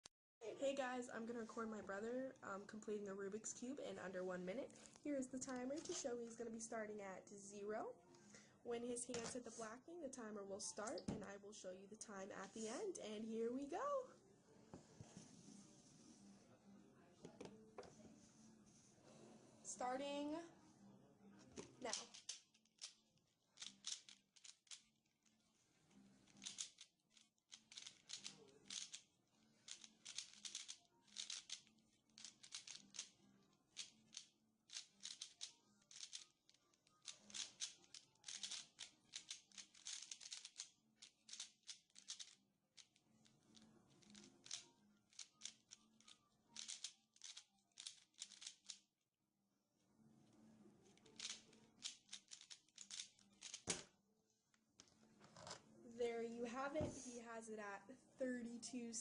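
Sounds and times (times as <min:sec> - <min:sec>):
puzzle cube plastic clicks: 0:21.8 - 0:25.0, 0:26.3 - 0:33.2, 0:33.8 - 0:48.8, 0:51.0 - 0:53.8.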